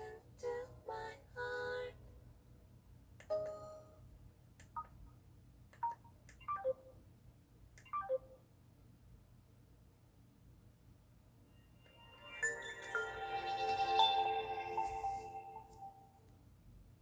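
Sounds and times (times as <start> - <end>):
single chime: 11.6 - 16.2
electronic tone: 11.8 - 16.1.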